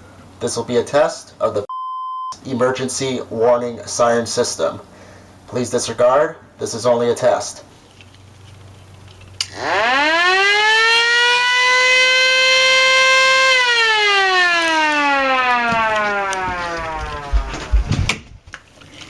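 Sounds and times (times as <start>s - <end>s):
tornado siren: 9.5s - 18.0s.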